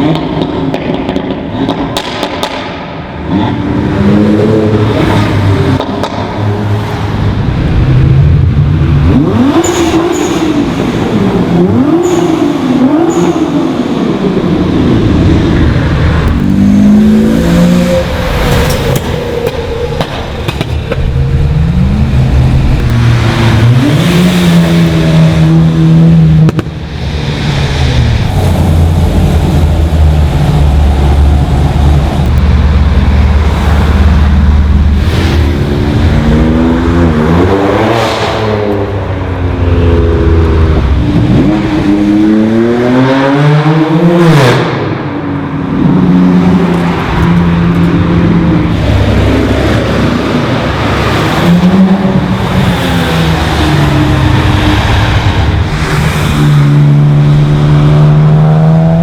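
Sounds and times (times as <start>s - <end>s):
modified cars accelerating past: 3.3s - 59.0s.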